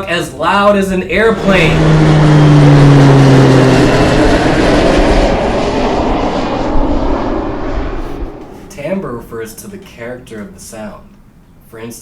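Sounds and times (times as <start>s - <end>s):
airplane flying by: 0.6s - 9.8s.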